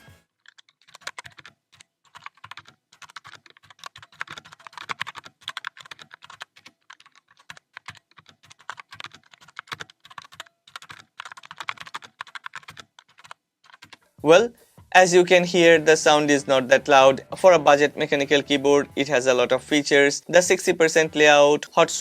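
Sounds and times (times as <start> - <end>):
mechanical keyboard typing: 0.4 - 14.0.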